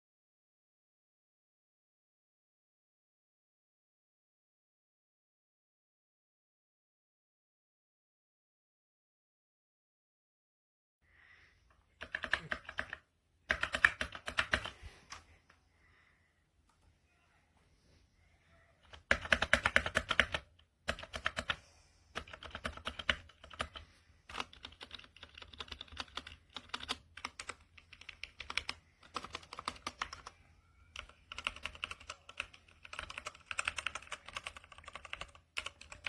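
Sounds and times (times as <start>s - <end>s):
mechanical keyboard typing: 12.0s - 15.2s, 18.8s - 36.0s.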